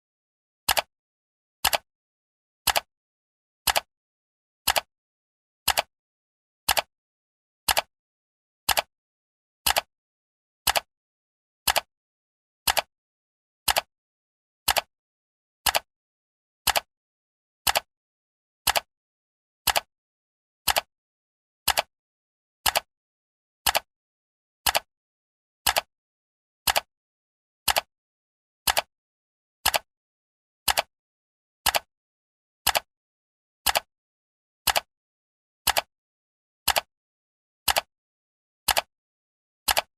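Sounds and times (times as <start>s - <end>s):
clock ticking: 2.7s - 2.9s, 3.7s - 3.9s, 9.7s - 9.9s, 11.7s - 11.9s, 12.7s - 12.9s, 13.7s - 13.9s, 14.7s - 14.9s, 15.6s - 15.9s, 16.7s - 16.9s, 19.7s - 19.9s, 20.7s - 20.9s, 21.7s - 21.9s, 27.7s - 27.9s, 29.6s - 29.9s, 30.7s - 30.9s, 32.7s - 32.9s, 34.7s - 34.9s, 35.7s - 35.9s, 36.7s - 36.9s, 37.7s - 37.9s, 38.7s - 38.9s, 39.7s - 39.9s.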